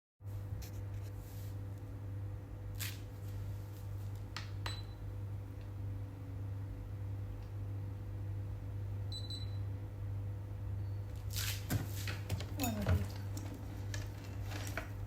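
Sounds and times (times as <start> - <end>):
humidifier humming: 0.3 - 15.0.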